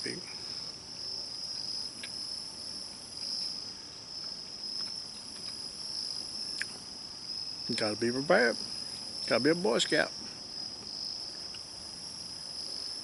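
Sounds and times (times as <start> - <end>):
insects trilling: 0.0 - 13.0
faint ticks: 11.3 - 11.7.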